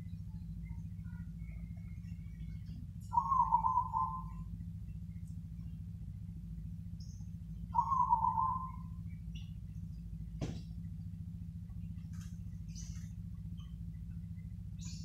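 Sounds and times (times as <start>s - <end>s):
small birds chirping: 0.0s - 15.0s
steady low hum: 0.0s - 15.0s
dove cooing: 2.5s - 4.5s, 7.7s - 9.0s.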